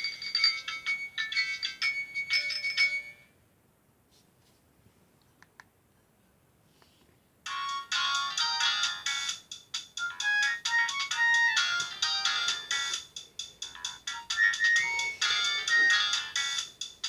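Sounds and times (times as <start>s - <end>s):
mobile phone ringtone melody: 0.0s - 3.3s, 7.5s - 9.4s, 10.0s - 16.7s.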